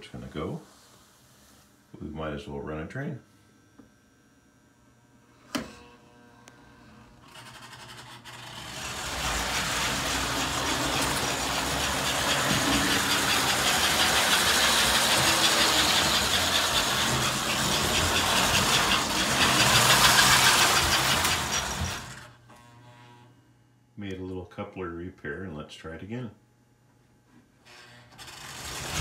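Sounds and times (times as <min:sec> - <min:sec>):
toy train motor whirring and rattling: 0:07.2 - 0:22.7, 0:27.7 - 0:29.0.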